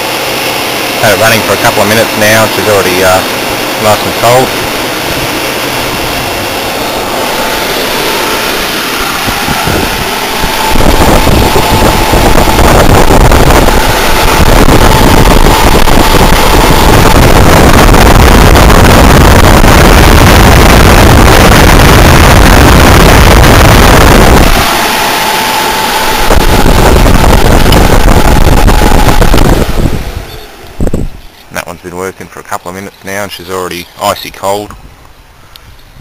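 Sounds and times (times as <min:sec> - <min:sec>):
air conditioner fan blowing: 0:00.0 - 0:36.0
wind buffeting microphone: 0:03.2 - 0:31.4.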